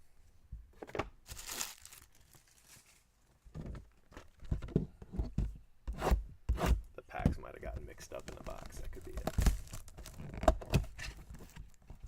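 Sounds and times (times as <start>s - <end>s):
wrapper tearing open: 1.2s - 3.0s
wrapper crinkling and rustling: 1.2s - 3.2s, 8.4s - 10.4s.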